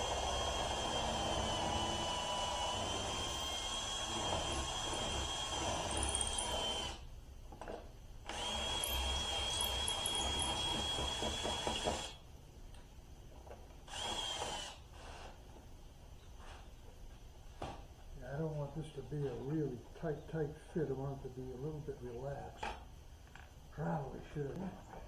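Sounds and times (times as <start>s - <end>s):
electric drill whining: 0.0s - 7.1s, 8.3s - 12.2s, 13.9s - 15.1s.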